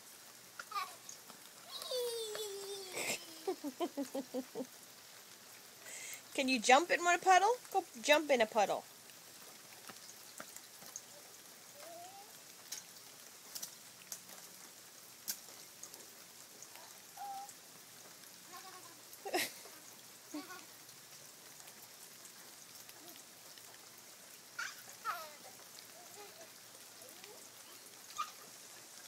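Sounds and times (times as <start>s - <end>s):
light rain patter: 0.0s - 29.0s
young child vocalizing: 1.7s - 3.7s, 11.8s - 12.4s, 16.8s - 17.6s.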